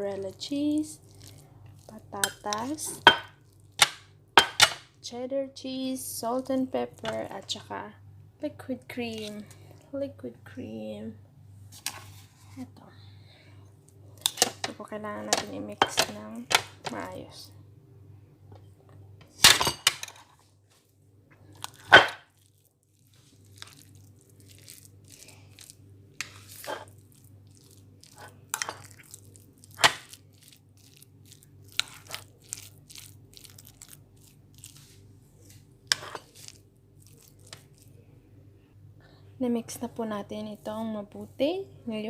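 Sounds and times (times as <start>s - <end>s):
cutlery mashing potato in bowl: 0.0s - 4.8s, 23.2s - 35.0s, 35.9s - 37.8s.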